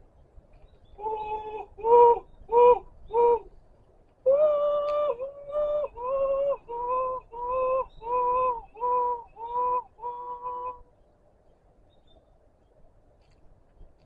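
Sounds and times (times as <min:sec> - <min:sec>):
man sobbing: 0:01.0 - 0:03.4, 0:04.3 - 0:10.8.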